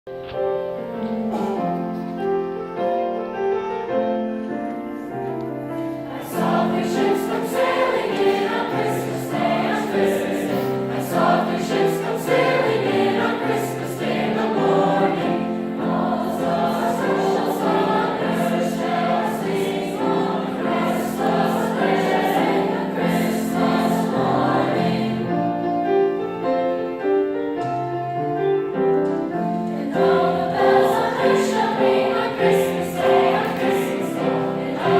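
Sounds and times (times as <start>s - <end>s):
choir singing: 5.7s - 26.7s, 29.2s - 34.9s.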